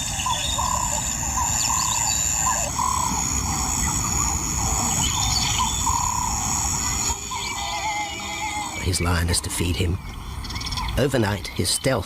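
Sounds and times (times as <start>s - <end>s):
rising and falling call: 0.0s - 9.4s
high insect trill: 0.0s - 12.0s.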